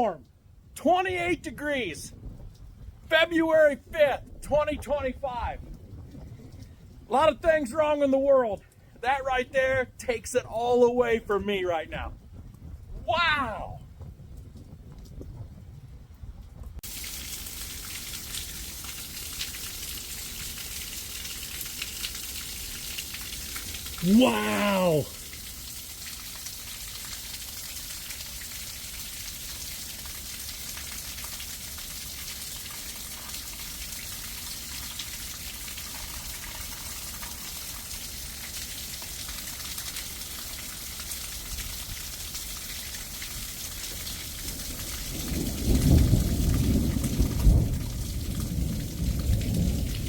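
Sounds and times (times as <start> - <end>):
freezing rain hissing: 16.8 - 49.9
thunder rumbling: 44.7 - 50.0.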